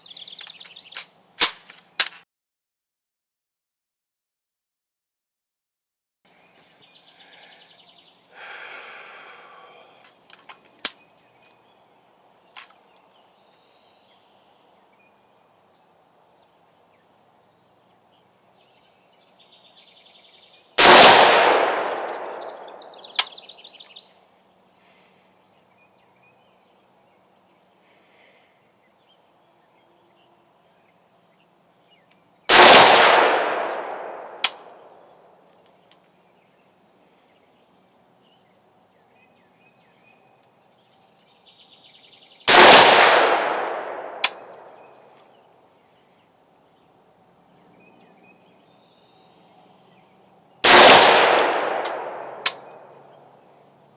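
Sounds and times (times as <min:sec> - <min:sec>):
rifle shots with echo: 0:20.8 - 0:23.4, 0:32.5 - 0:35.0, 0:42.5 - 0:44.8, 0:50.6 - 0:52.8
sharp click: 0:23.1 - 0:24.0, 0:33.3 - 0:34.7, 0:44.2 - 0:44.5, 0:51.4 - 0:52.7.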